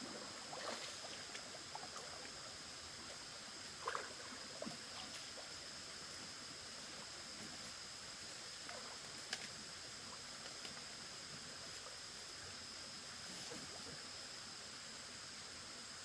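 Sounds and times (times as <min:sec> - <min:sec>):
small clicks or splashes: 0:08.7 - 0:09.6.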